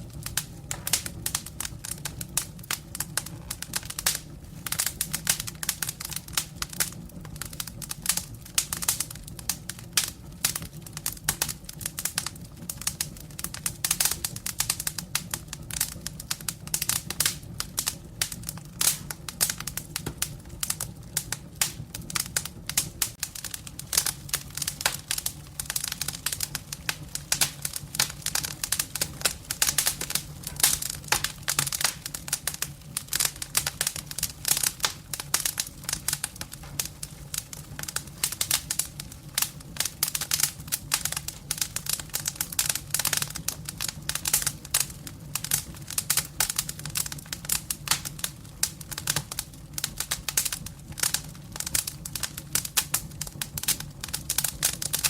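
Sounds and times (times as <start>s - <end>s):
low steady rumble: 0.0s - 42.9s
firewood crackling and popping: 0.0s - 55.0s.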